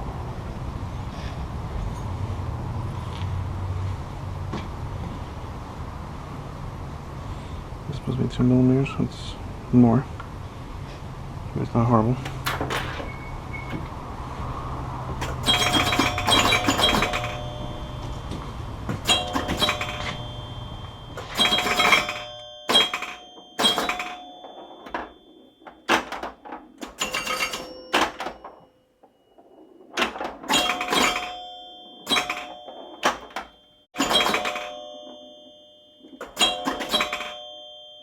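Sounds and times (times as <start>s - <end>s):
low steady hum: 4.2s - 36.6s
metal tools clattering: 12.2s - 14.0s, 15.1s - 38.0s.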